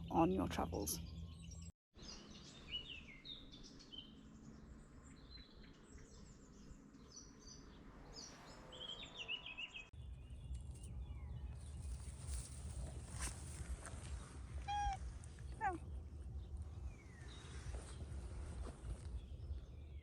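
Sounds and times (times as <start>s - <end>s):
songbirds chirping and trilling: 0.0s - 20.0s
low rumble: 10.0s - 20.0s.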